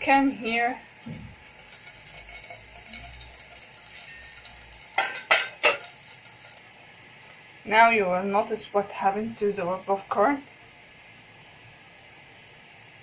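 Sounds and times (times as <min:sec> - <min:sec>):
oil sizzling in a pan: 0:00.0 - 0:13.0
popcorn kernels popping: 0:00.1 - 0:06.6.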